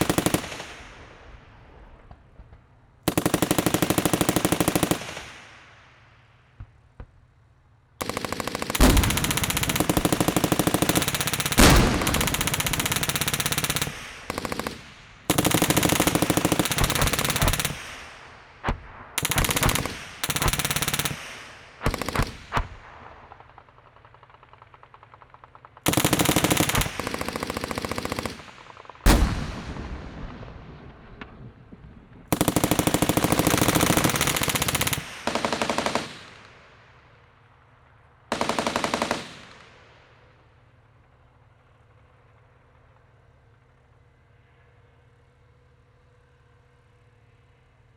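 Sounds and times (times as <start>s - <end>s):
automatic gunfire bursts: 0.0s - 1.0s, 3.0s - 5.5s, 8.0s - 29.6s, 32.3s - 36.7s, 38.3s - 39.9s
single gunshot with echo: 11.6s - 12.4s.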